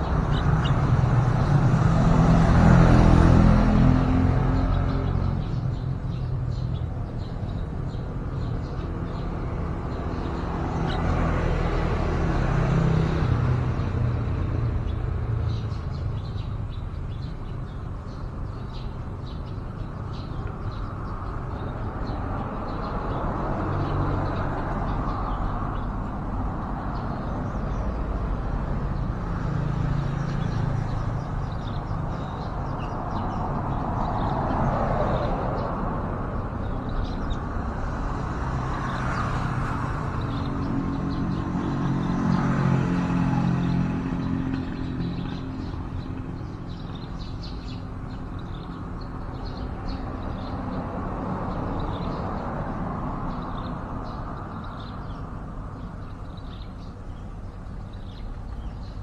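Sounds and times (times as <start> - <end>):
bird chirps: 0.0 - 1.8
traffic passing: 0.0 - 59.0.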